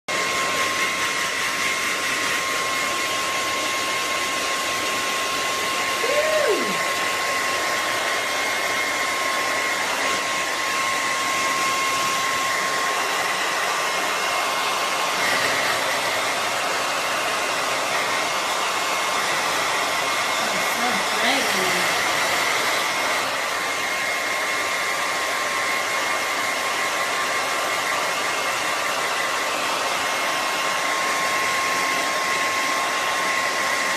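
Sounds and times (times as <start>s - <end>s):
hair dryer running: 0.1s - 33.9s
voice sounds sliding in pitch: 6.0s - 6.9s.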